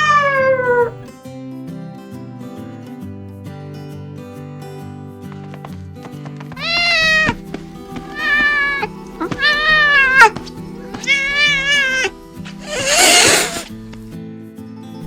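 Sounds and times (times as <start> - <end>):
cat meowing: 0.0 - 1.0, 6.6 - 7.4, 8.1 - 10.4, 11.0 - 13.7
background music: 0.0 - 15.0.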